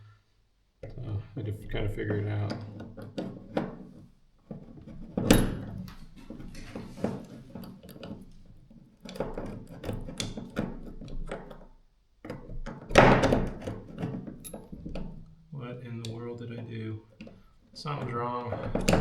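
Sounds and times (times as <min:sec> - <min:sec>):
metal parts clicking and knocking: 0:02.6 - 0:11.7, 0:12.3 - 0:15.2.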